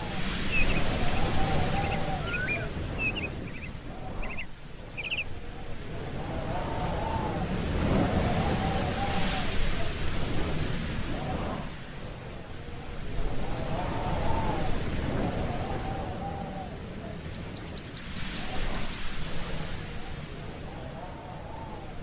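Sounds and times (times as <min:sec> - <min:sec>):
rising and falling bird calls: 0:00.5 - 0:05.3, 0:16.2 - 0:19.1
high bird chirps: 0:05.0 - 0:05.2, 0:17.0 - 0:19.1.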